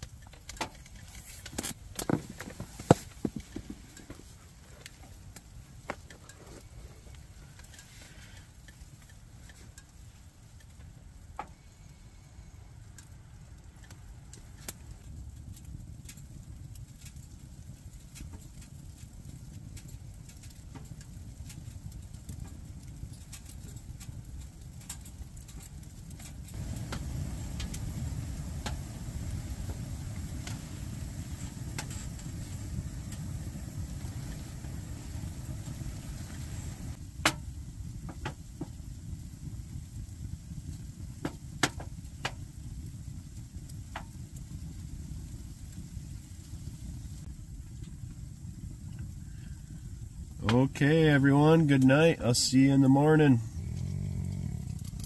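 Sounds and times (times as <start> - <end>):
fire crackling and popping: 0.0 - 55.0
low stove rumble: 0.0 - 55.0.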